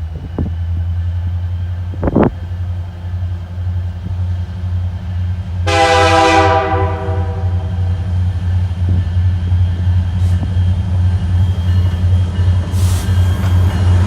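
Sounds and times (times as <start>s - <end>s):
diesel locomotive rumbling: 0.0s - 14.0s
locomotive air horn: 5.6s - 8.0s.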